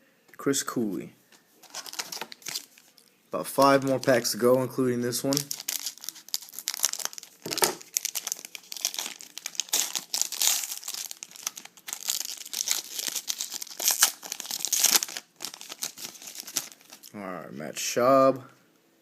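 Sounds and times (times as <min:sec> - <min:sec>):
card pack wrapper crinkling and tearing: 0:01.6 - 0:04.4, 0:05.1 - 0:17.1.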